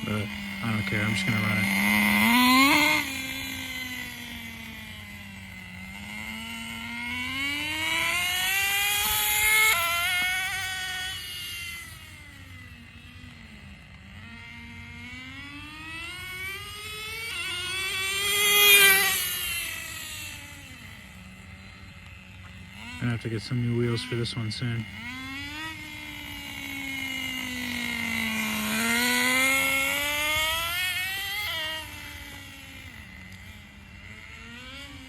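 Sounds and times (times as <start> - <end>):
rc car engine whining: 0.0 - 35.0.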